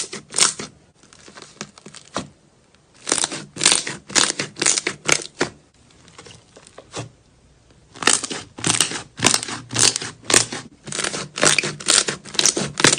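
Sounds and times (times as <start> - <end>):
slime squished by hand: 7.9 - 12.9.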